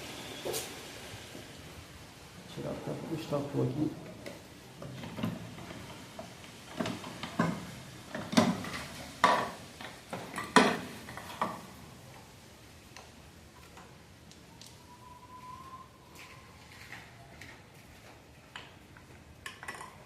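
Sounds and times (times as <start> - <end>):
metal tools clinking and knocking: 19.4 - 20.0.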